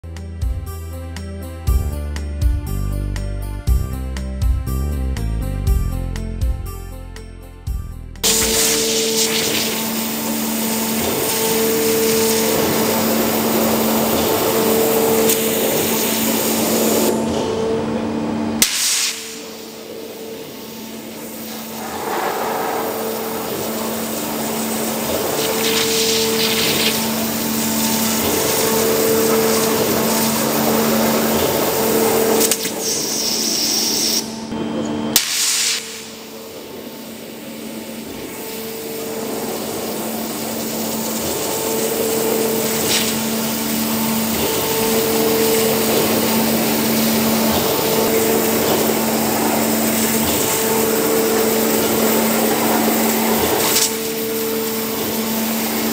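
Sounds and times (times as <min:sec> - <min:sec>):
machine hum: 0:08.2 - 0:35.2, 0:36.1 - 0:55.9
water jet hiss: 0:08.3 - 0:17.1, 0:18.6 - 0:34.2, 0:36.9 - 0:55.9.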